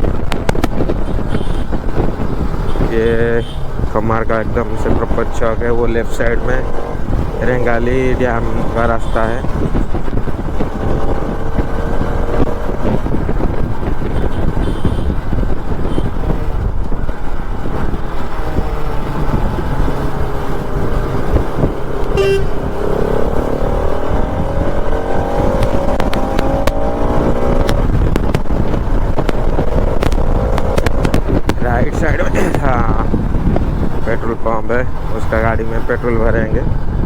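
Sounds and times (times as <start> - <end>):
motorcycle riding in traffic: 0.0 - 37.0
vehicle horn toot: 1.1 - 1.8, 14.2 - 15.2, 15.8 - 16.1, 22.1 - 22.8
rising horn or engine tones: 21.9 - 27.6.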